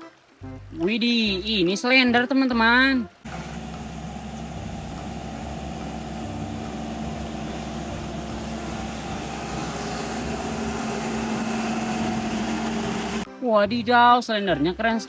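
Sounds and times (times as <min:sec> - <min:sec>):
small motor humming: 0:03.3 - 0:13.3.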